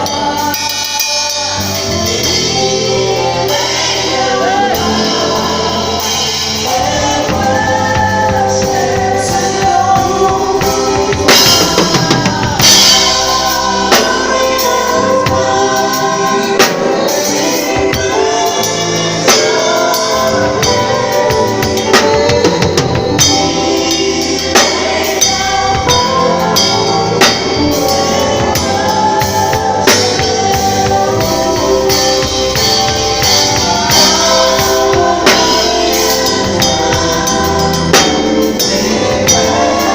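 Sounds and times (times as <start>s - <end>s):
person singing: 0.0s - 39.9s.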